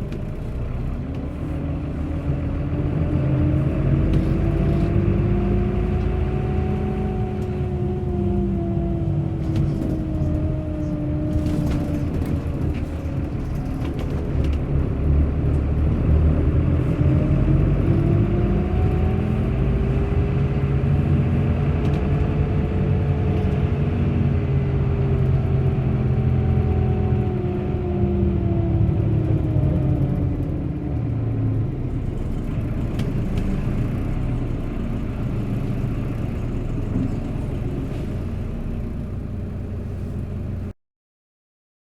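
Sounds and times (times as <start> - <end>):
bus engine rumbling: 0.0 - 40.7.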